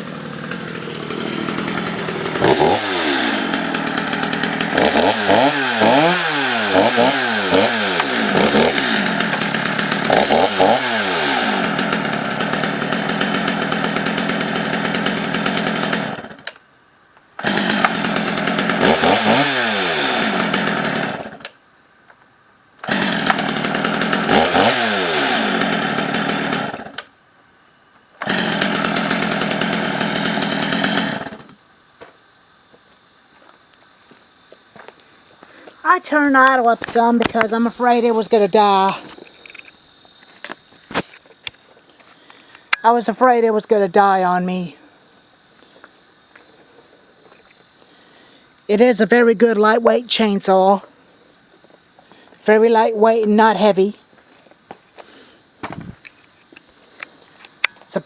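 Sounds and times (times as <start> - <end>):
chainsaw revving: 0.0 - 16.6, 17.4 - 21.6, 22.8 - 27.1, 28.2 - 31.6, 35.8 - 39.7, 42.2 - 44.8, 52.1 - 54.1.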